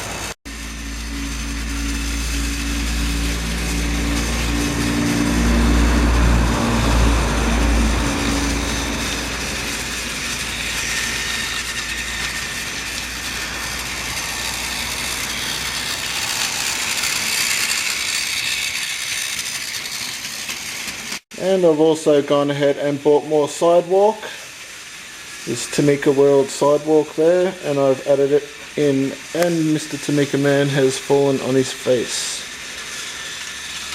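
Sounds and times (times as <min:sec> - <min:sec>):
toy train motor whirring: 0:00.0 - 0:33.9
low hum: 0:00.1 - 0:20.5.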